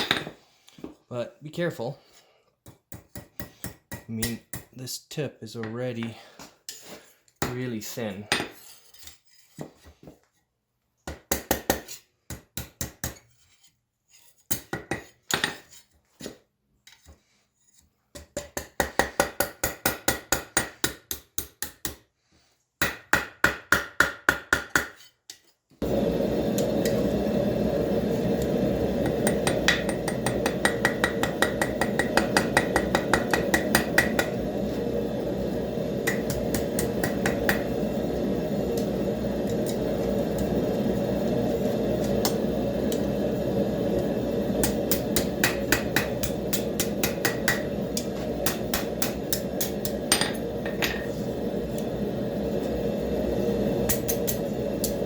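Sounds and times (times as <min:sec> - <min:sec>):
hammer striking metal on anvil: 0:29.0 - 0:34.4, 0:44.6 - 0:47.7, 0:48.4 - 0:51.0.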